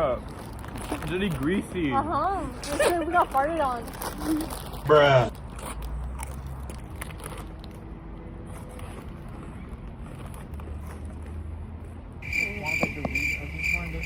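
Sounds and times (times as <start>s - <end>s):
crickets chirping: 12.2s - 14.0s.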